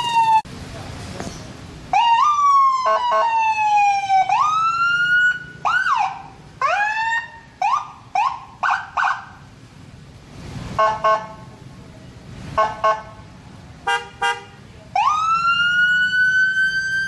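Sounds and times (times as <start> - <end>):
horn-tone blasts: 13.8 - 14.6.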